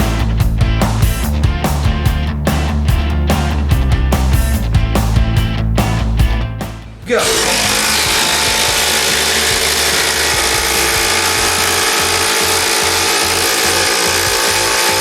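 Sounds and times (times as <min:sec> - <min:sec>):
impact driver rattling: 0:07.2 - 0:15.0.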